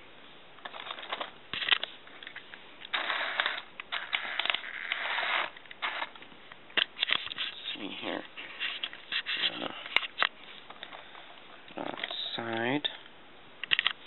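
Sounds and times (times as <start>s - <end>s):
plastic parts rattling: 0.6s - 6.2s
remote-control vehicle running: 2.9s - 6.1s.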